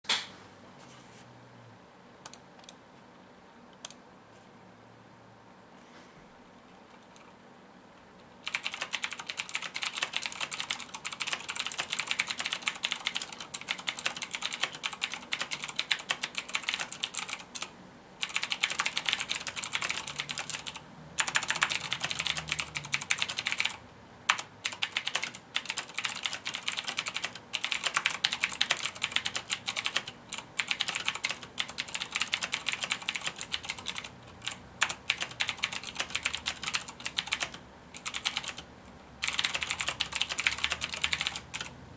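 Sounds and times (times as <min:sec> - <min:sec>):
clicky mechanical keyboard typing: 0:06.9 - 0:07.3, 0:08.2 - 0:38.6, 0:39.2 - 0:41.8.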